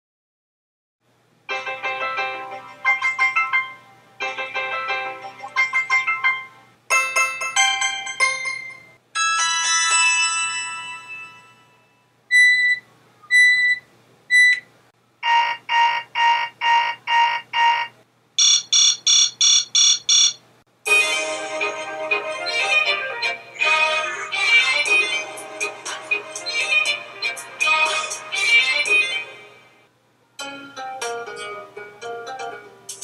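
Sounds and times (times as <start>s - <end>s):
held chord: 20.8s - 28.2s.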